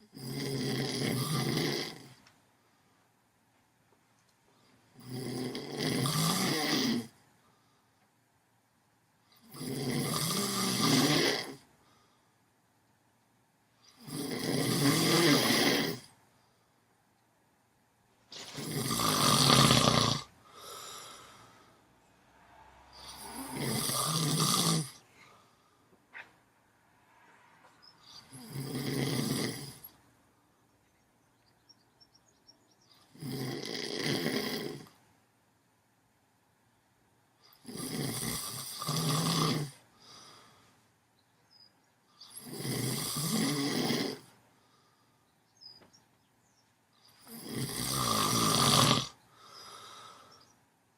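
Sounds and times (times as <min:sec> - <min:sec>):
loud rasping snoring: 0:00.0 - 0:02.2, 0:05.0 - 0:07.2, 0:09.4 - 0:11.6, 0:13.9 - 0:16.1, 0:18.4 - 0:21.4, 0:22.9 - 0:25.0, 0:28.0 - 0:30.0, 0:33.0 - 0:35.0, 0:37.5 - 0:39.8, 0:42.2 - 0:44.3, 0:47.2 - 0:50.2.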